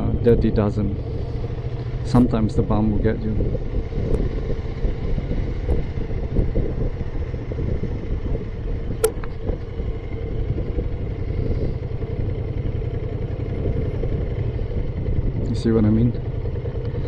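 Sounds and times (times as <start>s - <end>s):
motorcycle engine and road noise: 0.0s - 17.0s
short sharp click: 9.0s - 9.4s.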